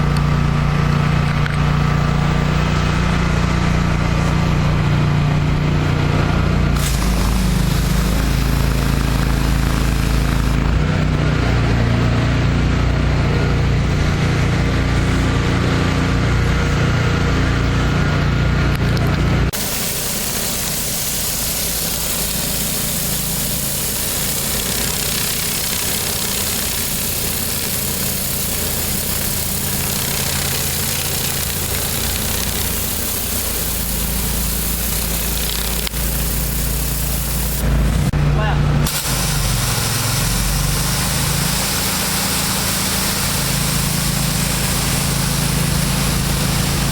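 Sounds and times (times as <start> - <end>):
pressure washer engine running: 0.0 - 46.9
loud even hiss: 6.8 - 10.8, 19.5 - 38.1, 38.9 - 46.9.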